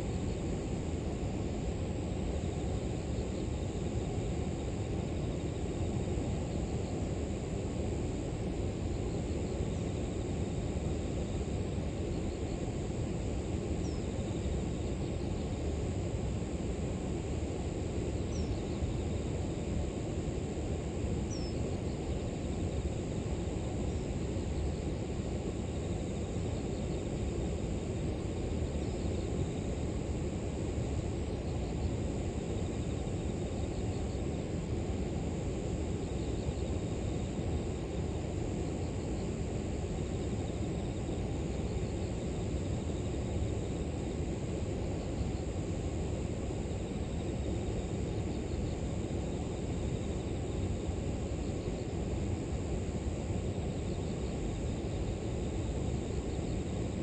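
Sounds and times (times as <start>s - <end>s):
insect trilling: 18.1s - 19.5s, 21.2s - 22.8s.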